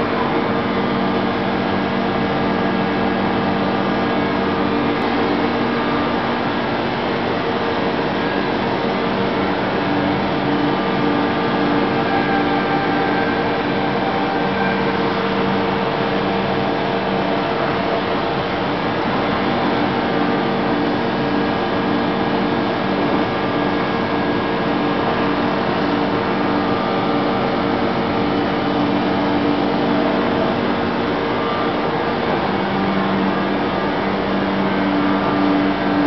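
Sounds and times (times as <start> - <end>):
router machinery whirring: 5.0 - 21.5.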